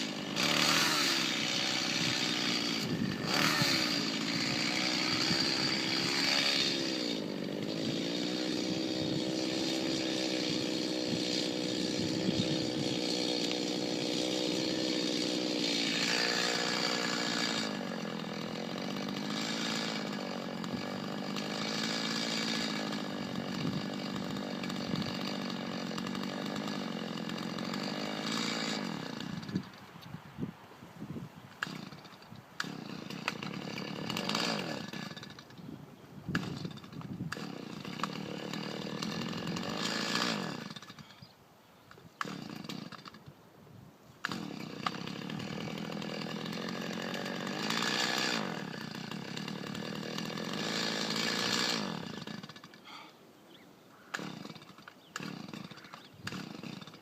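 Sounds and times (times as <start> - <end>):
chainsaw cutting wood: 0.0 - 30.1, 31.5 - 41.3, 41.9 - 43.4, 44.2 - 53.2, 54.0 - 57.0.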